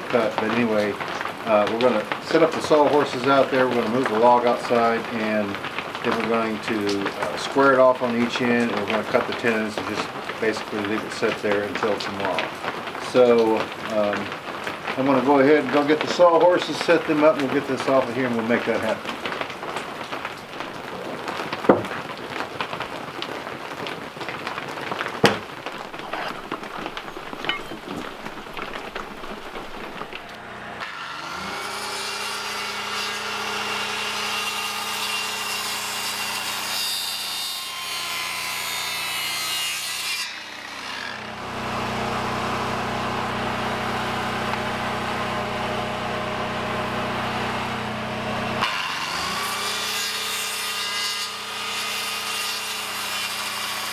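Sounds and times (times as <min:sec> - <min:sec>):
power saw cutting wood: 0:00.0 - 0:22.2, 0:24.8 - 0:53.9
handling noises: 0:16.9 - 0:30.4
sharp knocks: 0:19.6 - 0:22.1, 0:25.1 - 0:30.3.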